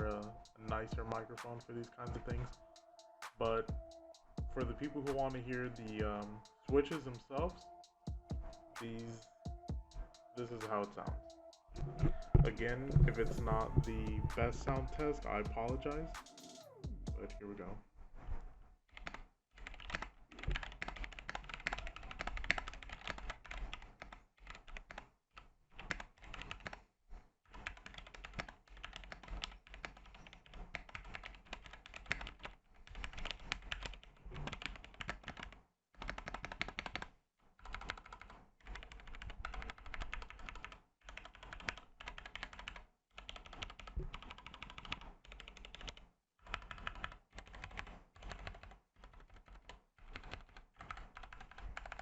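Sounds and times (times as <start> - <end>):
mechanical keyboard typing: 19.0 - 25.0, 25.8 - 26.8, 27.6 - 52.0.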